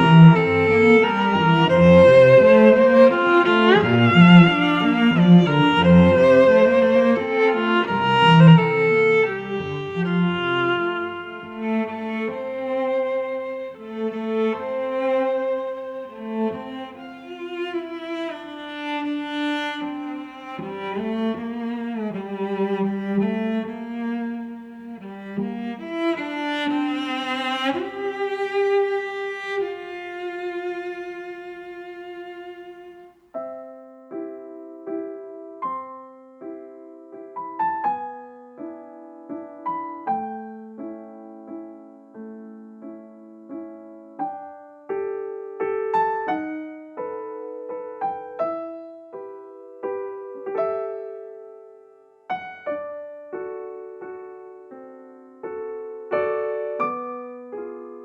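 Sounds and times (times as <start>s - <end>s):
bowed strings sustained notes: 0.0s - 15.6s
piano melody: 0.0s - 24.2s.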